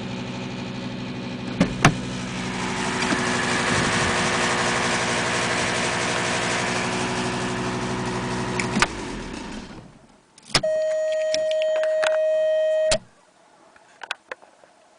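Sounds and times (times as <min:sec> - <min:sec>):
diesel engine ticking: 0:00.0 - 0:09.5
engine running down: 0:00.0 - 0:10.0.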